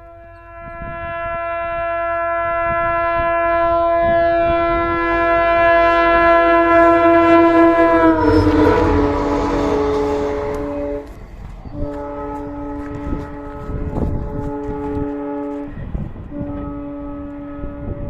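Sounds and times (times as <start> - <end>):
train horn blast: 0.0 - 18.0
train rushing and rumbling past: 4.5 - 18.0.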